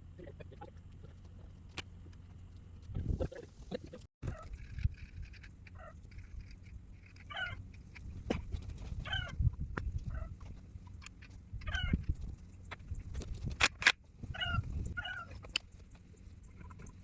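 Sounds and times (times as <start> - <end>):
animal calling: 7.1 - 7.6, 9.0 - 9.4, 11.6 - 12.1, 14.3 - 15.6.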